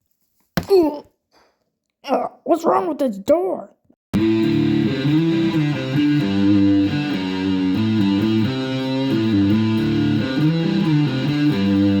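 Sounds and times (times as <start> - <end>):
bass line: 4.2 - 12.0
guitar music: 4.2 - 12.0.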